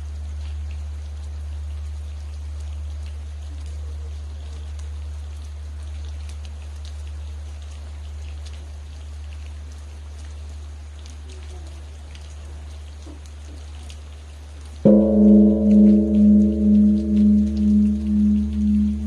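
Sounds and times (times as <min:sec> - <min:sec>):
raindrops ticking close by: 0:00.0 - 0:19.0
steady rain: 0:00.0 - 0:19.0
constant low rumble: 0:14.8 - 0:19.0.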